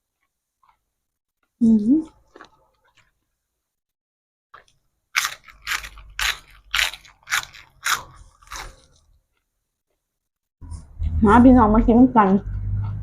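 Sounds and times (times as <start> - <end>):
person chewing crunchy food: 2.1 - 3.3, 4.6 - 9.5.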